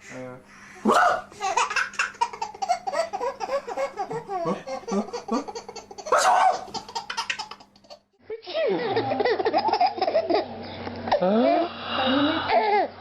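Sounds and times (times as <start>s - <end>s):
baby giggling: 1.3s - 8.0s, 8.7s - 10.5s.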